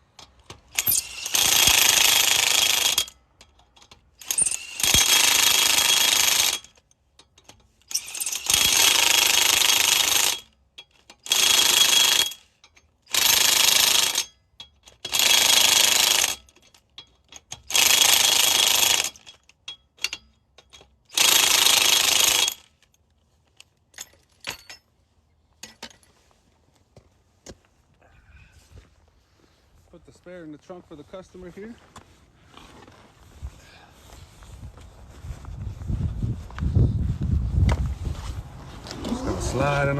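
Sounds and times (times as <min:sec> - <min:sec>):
impact wrench hammering: 0:00.2 - 0:03.6, 0:04.2 - 0:22.7.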